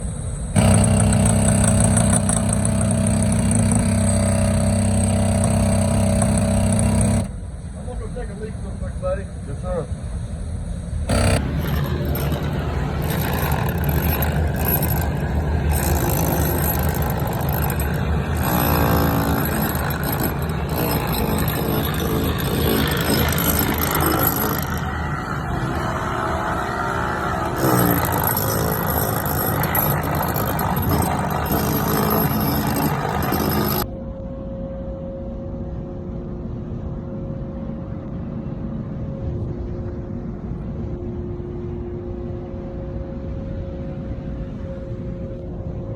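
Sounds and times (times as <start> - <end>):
furnace roaring: 0.6 - 7.4, 11.1 - 33.9.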